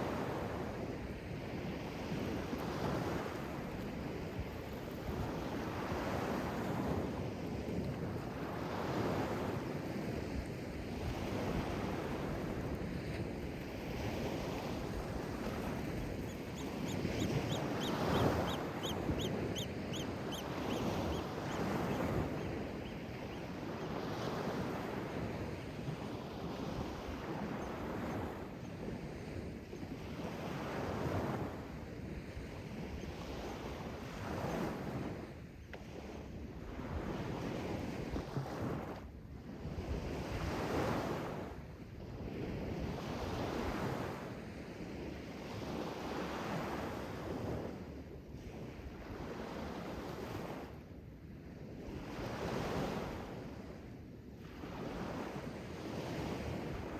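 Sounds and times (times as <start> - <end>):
sea waves washing on shore: 0.0 - 35.2
bird high calls: 16.2 - 23.5.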